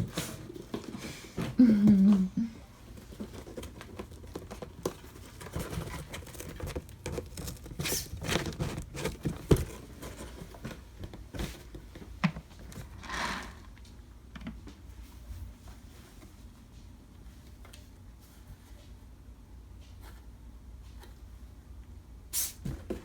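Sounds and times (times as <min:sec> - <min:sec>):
kittens scuffling and scratching: 0:00.0 - 0:13.7.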